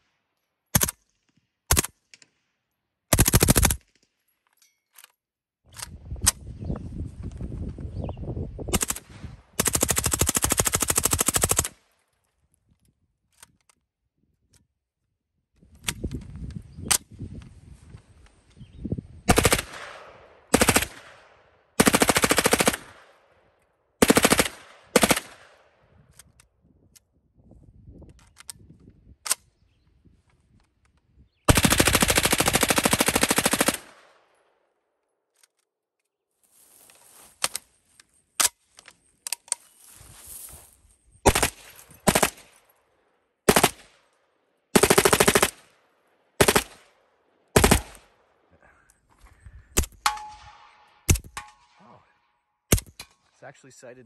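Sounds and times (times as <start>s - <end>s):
automatic gunfire bursts: 3.1s - 3.8s, 8.7s - 9.0s, 9.6s - 11.7s, 19.3s - 21.2s, 21.8s - 23.0s, 24.0s - 25.5s, 31.5s - 34.0s, 41.2s - 42.5s, 43.5s - 43.9s, 44.7s - 45.6s, 46.4s - 46.9s, 47.5s - 48.1s.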